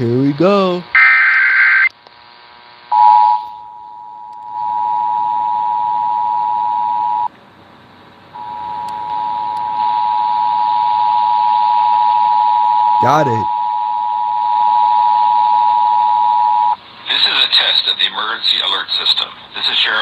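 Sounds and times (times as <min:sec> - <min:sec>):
radio background hiss: 0:16.8 - 0:20.0.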